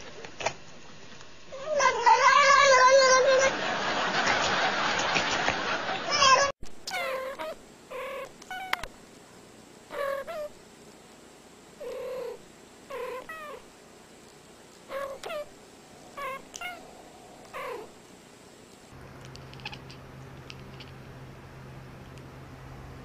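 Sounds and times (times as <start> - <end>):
cat mewing: 1.6 - 3.4, 6.1 - 8.9, 9.9 - 10.6, 11.8 - 13.6, 14.9 - 18.0
low steady hum: 5.6 - 23.0.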